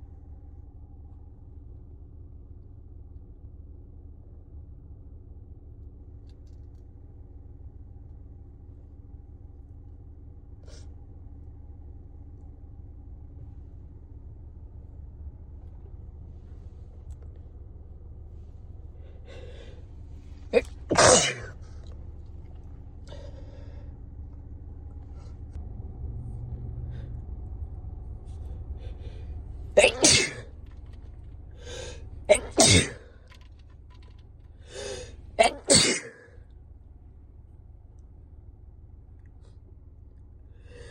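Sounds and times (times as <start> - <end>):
steady low hum: 0.0 - 40.9
person sneezing: 20.5 - 21.6, 29.8 - 30.5, 31.7 - 33.1, 34.7 - 36.3
person breathing in: 34.6 - 35.2.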